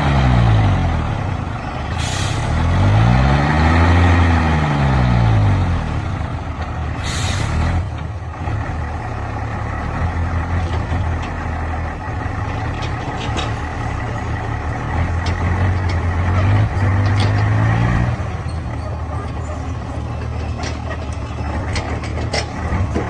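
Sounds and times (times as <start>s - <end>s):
heavy diesel engine running: 0.0s - 23.0s
air brake hiss: 1.9s - 2.6s, 7.0s - 7.6s.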